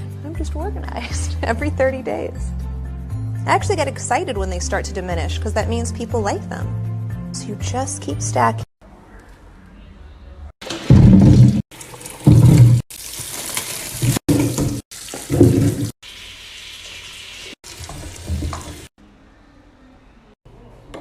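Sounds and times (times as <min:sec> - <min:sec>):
tap water running into sink: 0:10.6 - 0:15.9, 0:17.7 - 0:18.9.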